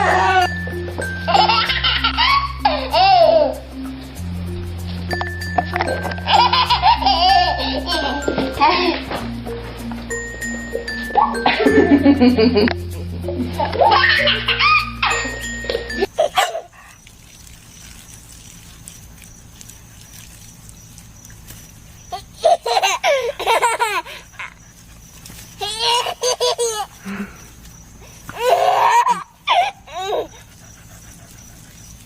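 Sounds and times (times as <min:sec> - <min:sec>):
baby laughing: 0:01.2 - 0:03.6, 0:06.2 - 0:09.1, 0:13.3 - 0:16.9, 0:22.1 - 0:24.6, 0:25.6 - 0:27.0, 0:28.3 - 0:30.4.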